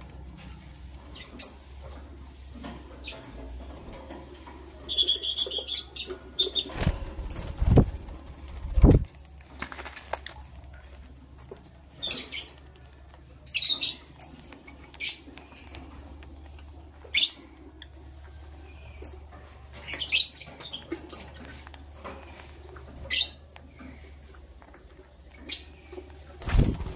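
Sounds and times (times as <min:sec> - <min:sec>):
lovebirds chirping: 0:04.8 - 0:07.6, 0:10.6 - 0:26.6.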